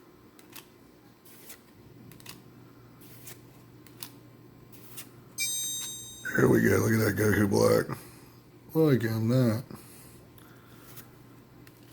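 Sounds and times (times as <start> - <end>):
cards being flipped: 0.3 - 5.2, 10.4 - 11.9
high ringing sound effect: 5.4 - 6.6.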